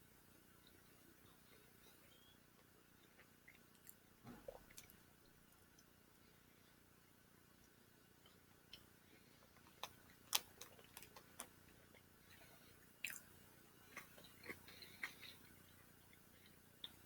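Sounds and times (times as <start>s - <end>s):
faint chewing: 0.4s - 17.0s.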